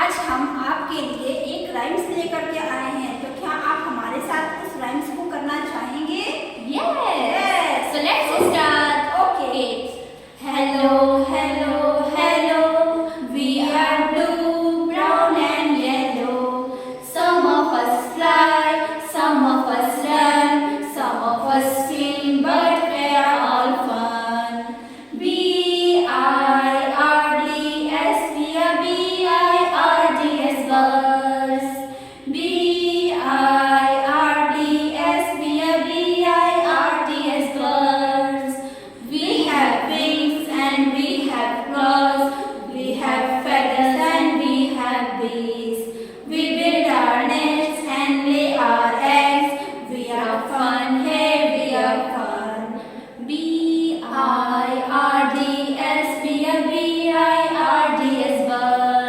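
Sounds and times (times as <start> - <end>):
breaths: 16.7 - 17.0, 24.7 - 25.2, 31.8 - 32.3, 38.6 - 39.0, 45.9 - 46.3, 52.7 - 53.2.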